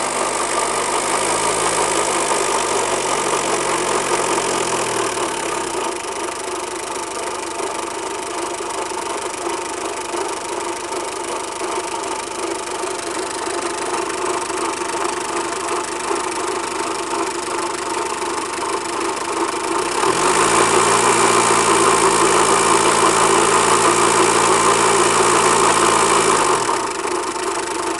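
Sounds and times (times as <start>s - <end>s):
engine scraping noise: 0.0s - 6.0s, 19.9s - 26.8s
diesel engine idling and revving: 0.0s - 27.9s.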